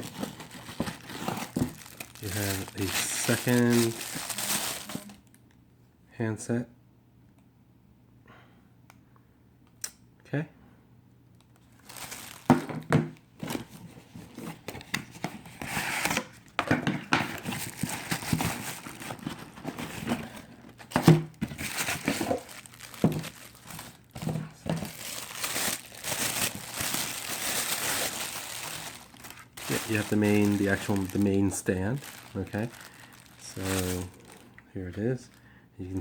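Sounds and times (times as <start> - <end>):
packaging crinkling: 0.0 - 5.4, 11.6 - 12.9, 17.1 - 34.6.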